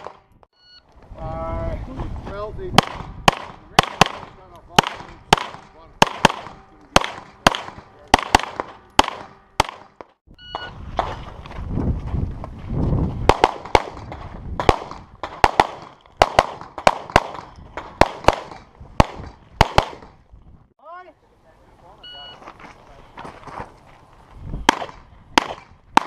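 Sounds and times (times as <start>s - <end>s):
low rumble of wind: 0.0s - 26.0s
shot timer beep: 0.5s - 0.9s, 10.3s - 10.8s
rapid pistol shots: 2.8s - 10.0s, 13.3s - 20.2s, 24.6s - 26.0s.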